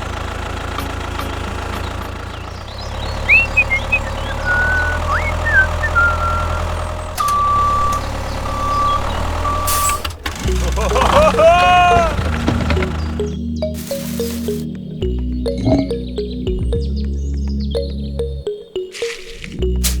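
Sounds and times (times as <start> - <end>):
electronic beep: 15.5 - 16.1.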